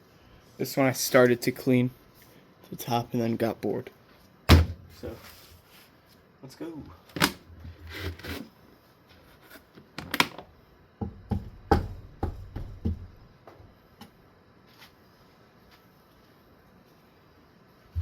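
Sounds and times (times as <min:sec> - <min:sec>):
knocks and thuds on cardboard: 0:04.5 - 0:04.8, 0:11.0 - 0:13.2.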